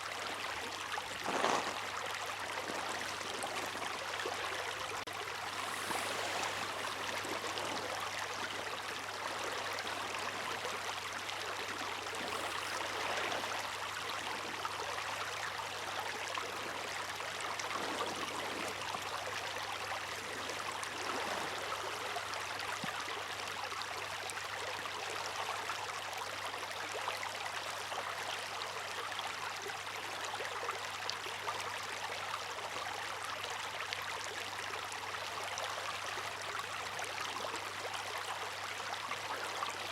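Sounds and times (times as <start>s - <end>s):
water rushing and splashing: 0.0s - 22.6s.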